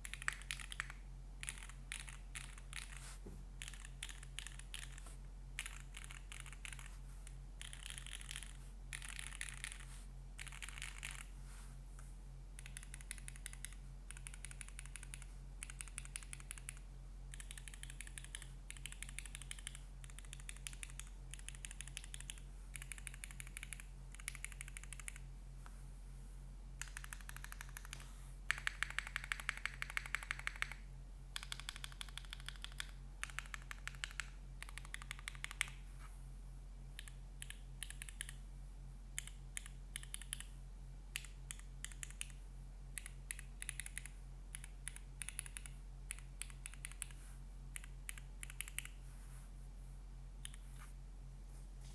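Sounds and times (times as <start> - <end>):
mechanical keyboard typing: 0.0 - 3.0, 3.6 - 5.0, 5.6 - 9.8, 10.4 - 11.3, 12.6 - 25.2, 26.8 - 30.8, 31.4 - 35.8, 37.0 - 38.4, 39.2 - 40.5, 41.2 - 42.4, 43.0 - 47.1, 47.8 - 48.9.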